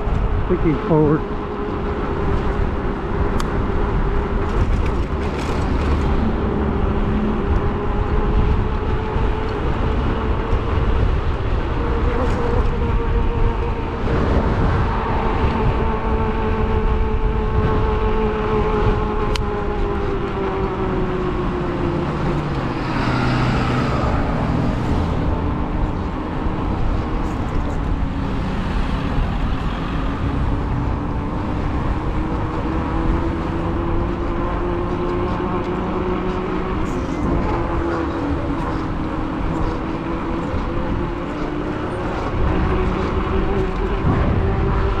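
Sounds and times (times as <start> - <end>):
road noise: 0.0 - 45.0
traffic passing: 0.0 - 45.0
wind on microphone: 0.0 - 45.0
electric bike motor whining: 1.2 - 28.7.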